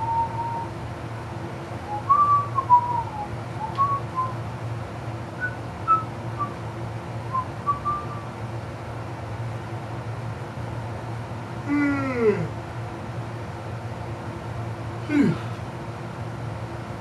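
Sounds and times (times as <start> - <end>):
person whistling a tune: 0.0 - 0.7, 1.9 - 4.4, 5.4 - 6.5, 7.3 - 8.2
steady low hum: 0.0 - 17.0.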